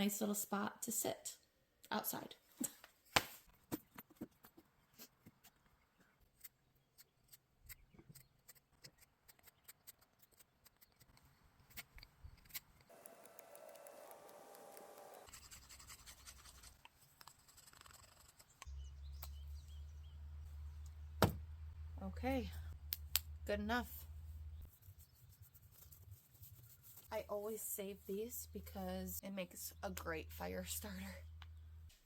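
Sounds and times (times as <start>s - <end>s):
low steady rumble: 18.7s - 25.1s, 25.7s - 32.0s.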